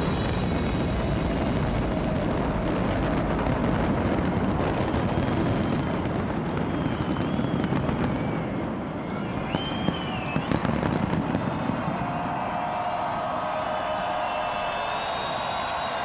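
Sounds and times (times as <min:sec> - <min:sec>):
fireworks booming: 0:00.0 - 0:08.8, 0:09.4 - 0:12.5
fireworks crackling: 0:00.0 - 0:08.8
fireworks whistling: 0:00.0 - 0:13.2, 0:14.3 - 0:16.0.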